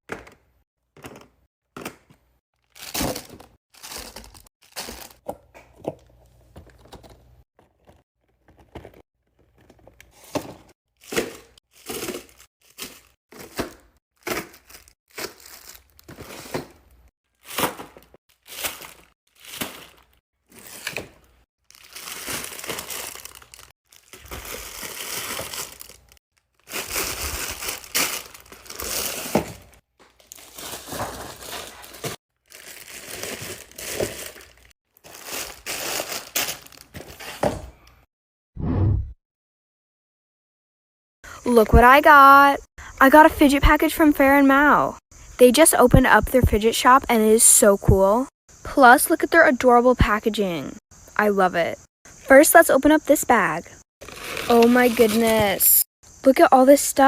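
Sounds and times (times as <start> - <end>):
crinkling and crumpling: 2.6 - 37.4, 54.0 - 55.9.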